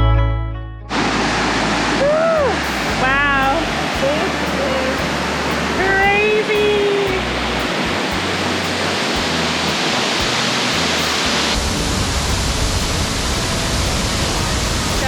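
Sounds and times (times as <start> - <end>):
waterfall rushing: 0.9 - 15.0.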